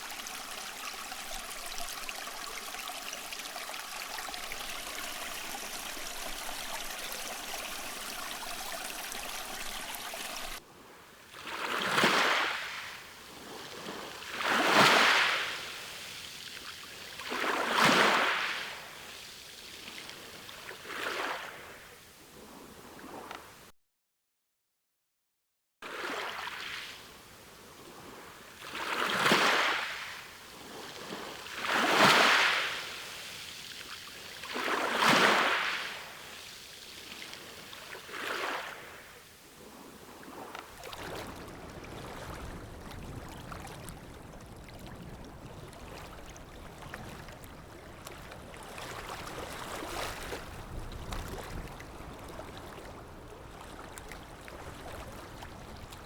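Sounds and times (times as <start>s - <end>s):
sea waves washing ashore: 0.0s - 10.6s, 25.9s - 53.5s.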